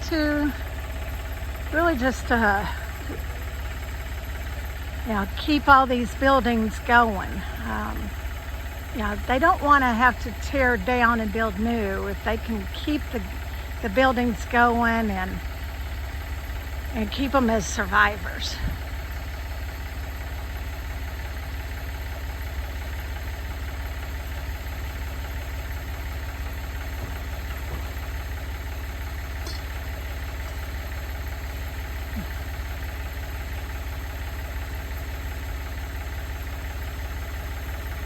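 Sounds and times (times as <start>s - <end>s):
engine idling: 0.0s - 38.0s.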